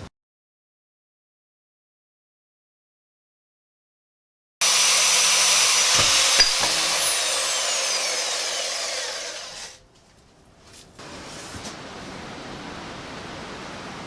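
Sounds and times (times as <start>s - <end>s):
metal-cutting saw winding down: 4.6s - 9.8s.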